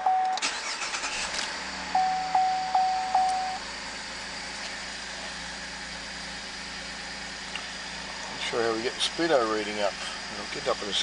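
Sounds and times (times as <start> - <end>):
car engine idling: 0.0 - 11.0
warning chime: 2.0 - 3.6.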